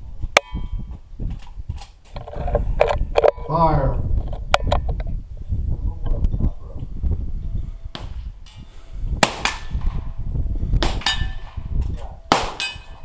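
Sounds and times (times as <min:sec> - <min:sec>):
pistol shots: 0:09.2 - 0:09.9, 0:12.3 - 0:12.8.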